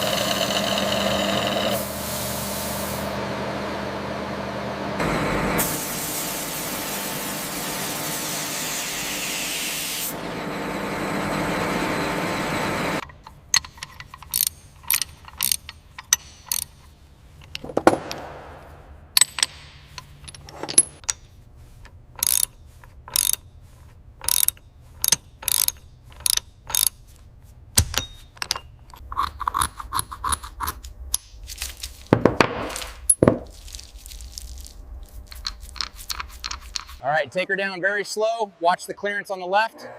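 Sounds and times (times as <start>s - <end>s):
metallic clicks and clanks: 13.0s - 18.4s, 19.2s - 23.4s, 24.2s - 27.0s, 27.8s - 31.4s.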